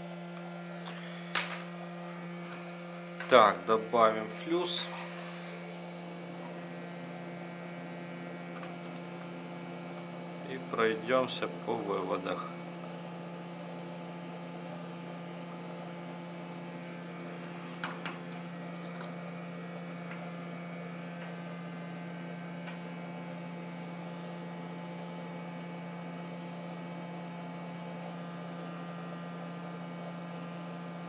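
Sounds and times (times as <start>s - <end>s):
steady electrical hum: 0.0s - 31.0s.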